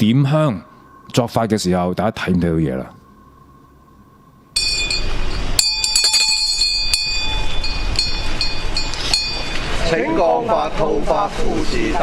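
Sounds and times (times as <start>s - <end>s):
steady hiss: 2.8s - 12.0s
hand bell ringing: 4.6s - 9.8s.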